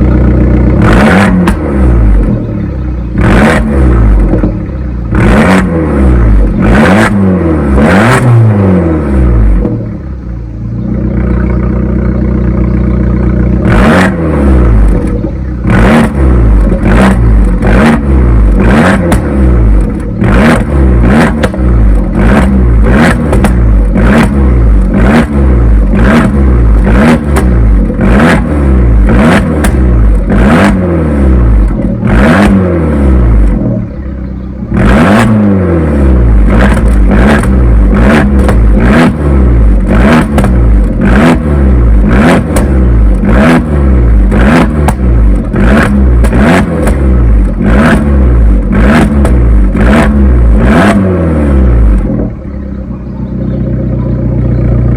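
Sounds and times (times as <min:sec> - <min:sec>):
exhaust pops and crackles: 0:00.0 - 0:02.5, 0:03.2 - 0:05.7, 0:09.5 - 0:10.0, 0:14.7 - 0:30.8, 0:31.4 - 0:32.6, 0:33.2 - 0:33.9, 0:36.2 - 0:51.0, 0:51.7 - 0:54.9
car engine revving: 0:00.0 - 0:54.9.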